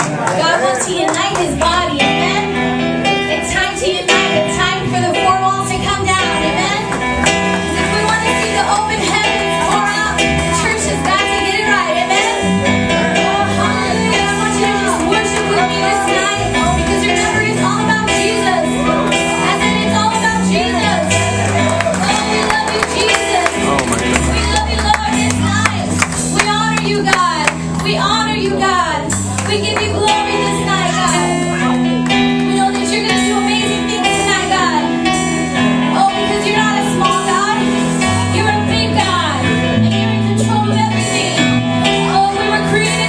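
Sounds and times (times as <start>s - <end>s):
band playing worship music: 0.0s - 43.0s
person singing: 20.4s - 25.4s.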